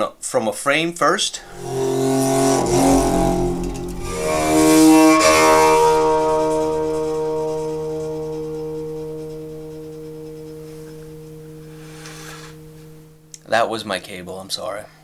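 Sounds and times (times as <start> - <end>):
bow scraping metal: 1.4 - 13.5
metal plates ringing low tones: 1.4 - 13.5.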